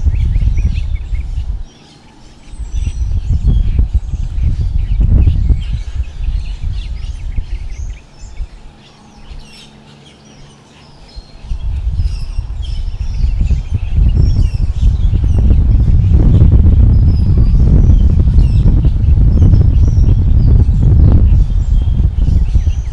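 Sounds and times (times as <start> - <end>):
birds chirping: 0.0 - 22.9
wind gusting over microphone: 0.0 - 22.9.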